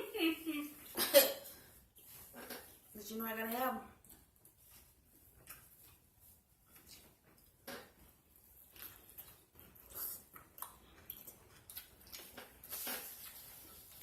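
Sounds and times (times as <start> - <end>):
chewing and lip smacking: 4.0 - 7.6, 8.3 - 14.0.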